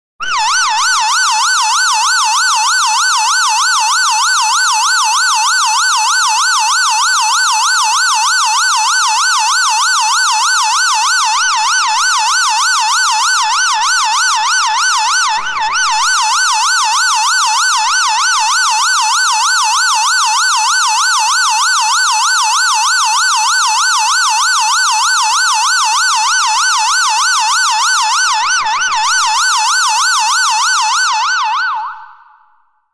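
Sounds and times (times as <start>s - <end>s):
ambulance siren warble: 0.2s - 32.4s.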